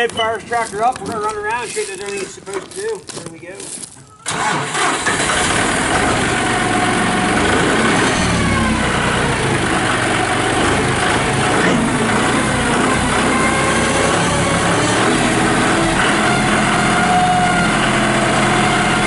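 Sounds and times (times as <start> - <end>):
tractor diesel engine idling: 4.2 - 19.0.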